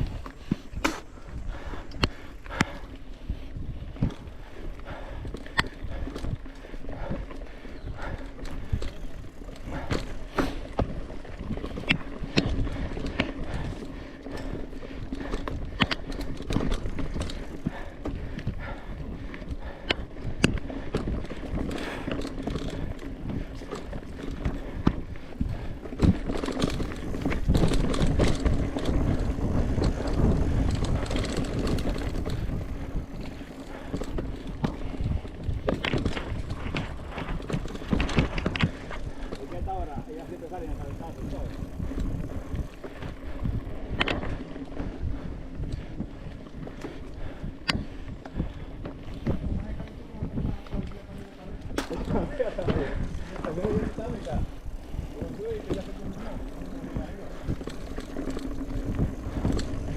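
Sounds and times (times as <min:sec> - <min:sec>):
mountain bike on rough trail: 0:00.0 - 0:59.9.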